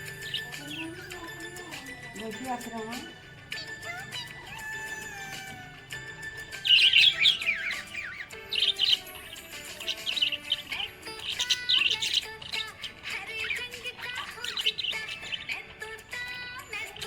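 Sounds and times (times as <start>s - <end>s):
background music: 0.0s - 17.0s
budgerigar chirping and warbling: 0.0s - 17.0s.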